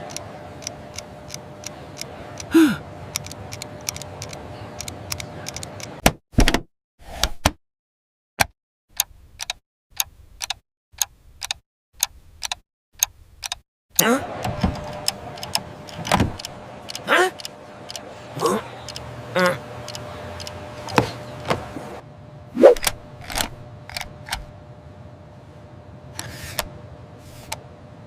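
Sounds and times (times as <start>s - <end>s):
clock ticking: 8.4s - 13.6s.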